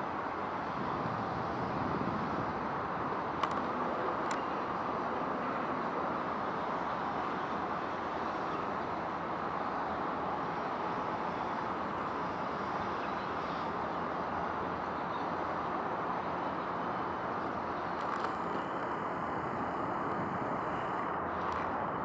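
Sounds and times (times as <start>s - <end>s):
distant road traffic hum: 0.0s - 22.0s.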